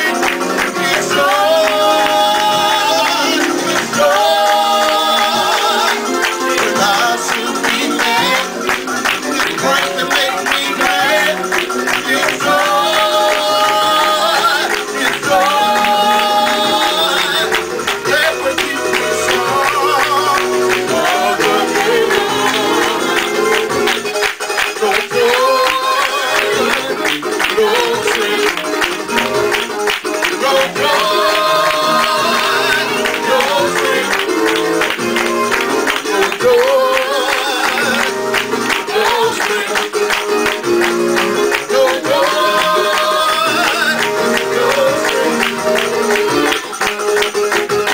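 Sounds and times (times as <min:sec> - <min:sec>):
music with quick beat: 0:00.0 - 0:47.9.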